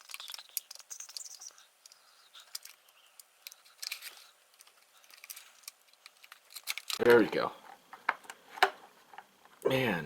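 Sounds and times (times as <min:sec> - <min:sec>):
plastic packaging clicks and crackles: 0:00.0 - 0:07.1.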